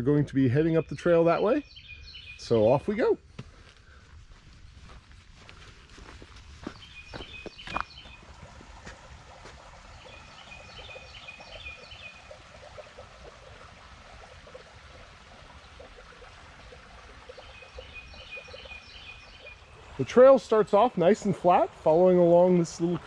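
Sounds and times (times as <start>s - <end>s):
bird singing: 0.3s - 3.1s, 6.6s - 8.3s, 9.9s - 12.4s, 17.3s - 23.0s
creek trickling: 0.4s - 23.0s
footsteps on trail: 3.3s - 10.2s.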